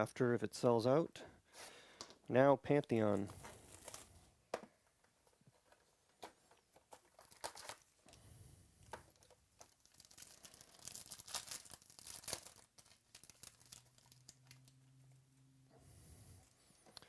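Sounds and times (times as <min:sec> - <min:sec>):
plastic wrapping tearing and crinkling: 0:03.2 - 0:04.2, 0:06.9 - 0:07.9, 0:09.1 - 0:14.8
small crackles and clicks: 0:08.8 - 0:15.2.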